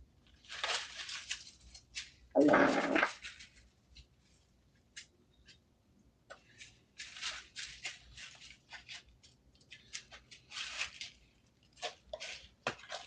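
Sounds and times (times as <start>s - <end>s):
faint rustling and clicking: 3.1s - 13.0s.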